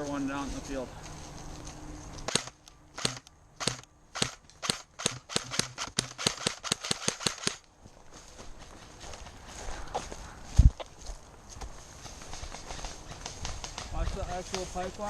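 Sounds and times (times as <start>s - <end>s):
airsoft gun shots: 2.3s - 7.6s.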